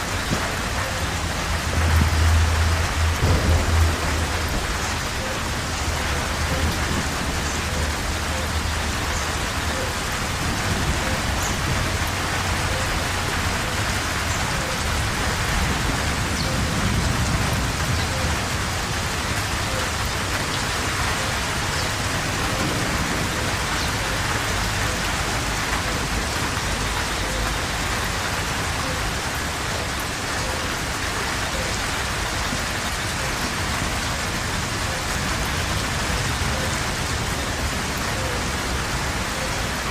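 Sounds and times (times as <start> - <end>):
heavy rain pouring: 0.0 - 39.9
low rumble: 1.2 - 7.4.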